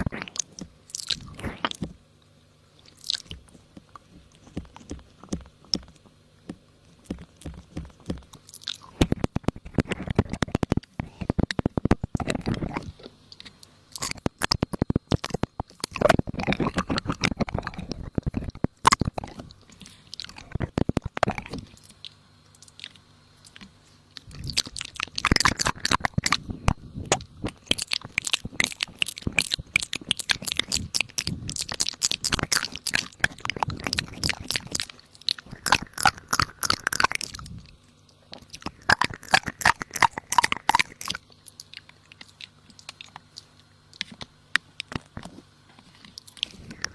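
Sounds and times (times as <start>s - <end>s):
close rapid crunching: 13.9s - 37.8s, 38.4s - 46.9s.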